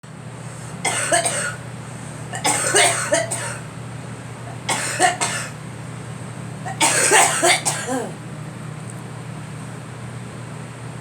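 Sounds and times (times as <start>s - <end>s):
girl coughing: 0.8s - 1.6s, 2.4s - 3.7s, 4.5s - 5.6s, 6.7s - 8.2s.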